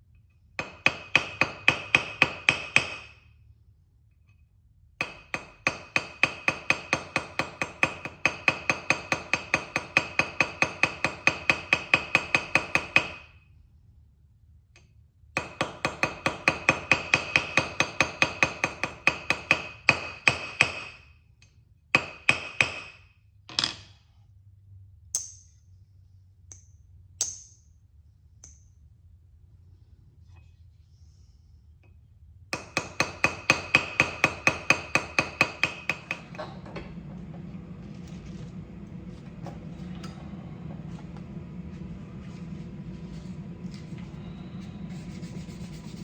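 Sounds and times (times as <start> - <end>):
hammer tapping on anvil: 0.6 - 3.2, 5.0 - 13.3, 14.8 - 23.9, 25.1 - 25.5, 26.4 - 27.7, 32.6 - 36.5.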